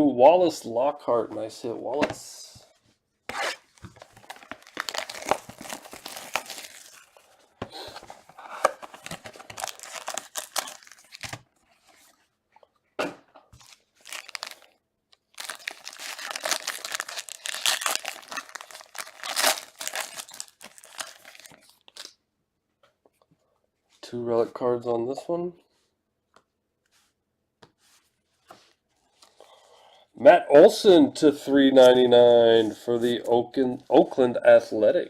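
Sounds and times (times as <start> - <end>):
packaging tearing and crumpling: 3.8 - 7.3, 8.6 - 11.4, 13.6 - 14.7, 15.3 - 22.1.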